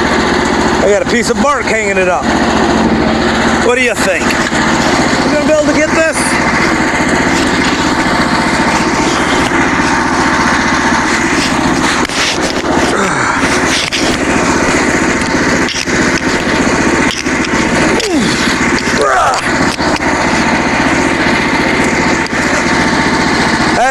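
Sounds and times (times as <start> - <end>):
engine running steadily: 0.0 - 23.9.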